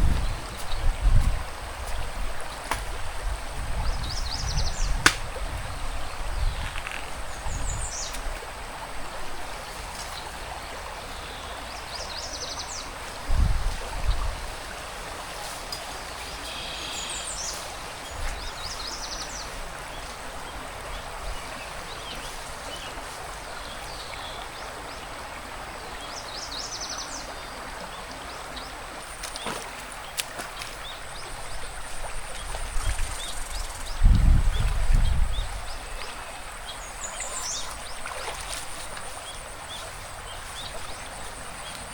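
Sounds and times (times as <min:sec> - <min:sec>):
forest stream flowing: 0:00.0 - 0:41.9
small birds chirping: 0:03.8 - 0:08.4, 0:28.6 - 0:41.9.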